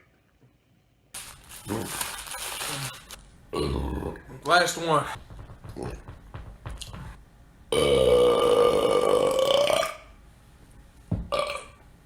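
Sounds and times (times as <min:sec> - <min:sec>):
man burping: 0:03.5 - 0:04.4, 0:07.7 - 0:10.1, 0:11.3 - 0:11.8.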